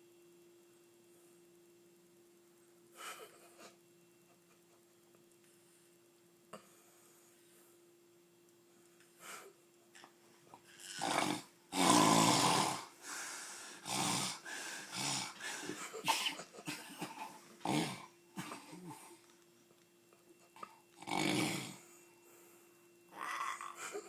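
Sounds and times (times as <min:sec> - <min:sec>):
loud snoring and snorts: 0:10.7 - 0:13.0, 0:13.8 - 0:15.4, 0:17.6 - 0:18.1, 0:21.0 - 0:21.8, 0:23.2 - 0:23.9.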